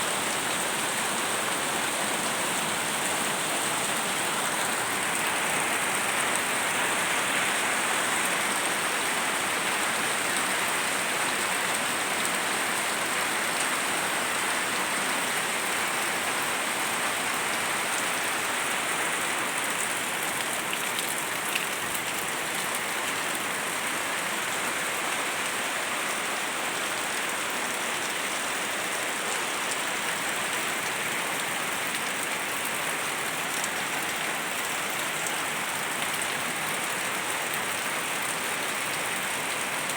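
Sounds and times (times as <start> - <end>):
rain pattering on surfaces: 0.1 - 39.9.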